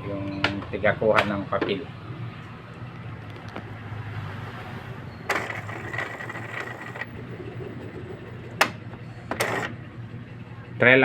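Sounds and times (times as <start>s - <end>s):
printer motor whine and rattle: 5.3s - 9.9s.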